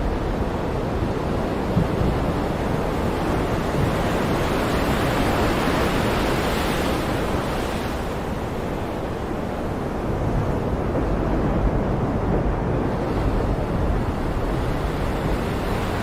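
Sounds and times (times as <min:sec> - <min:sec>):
heavy waves surging: 0:00.0 - 0:16.0
wind buffeting microphone: 0:00.0 - 0:16.0.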